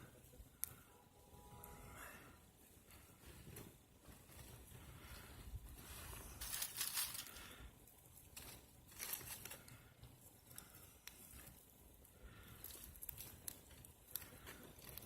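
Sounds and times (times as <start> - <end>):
dry bark crinkling and rustling: 4.0 - 15.0.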